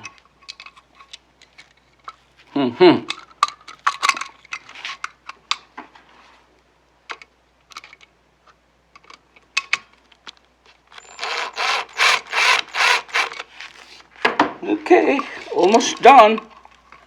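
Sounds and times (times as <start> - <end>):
screwdriver driving a screw: 11.0 - 13.8.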